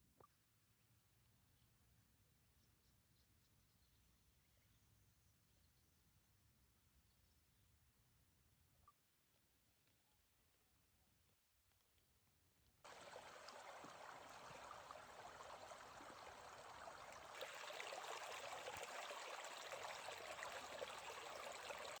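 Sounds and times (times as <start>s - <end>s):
stream water rushing and trickling: 12.9s - 22.0s.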